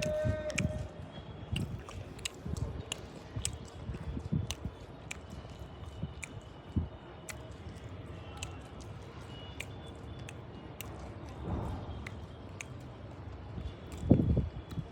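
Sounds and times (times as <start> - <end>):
person chewing crunchy fruit: 0.0 - 0.8, 1.5 - 12.8, 13.8 - 14.9
sharp crunching clicks: 0.0 - 0.8, 1.5 - 6.5, 13.9 - 14.9.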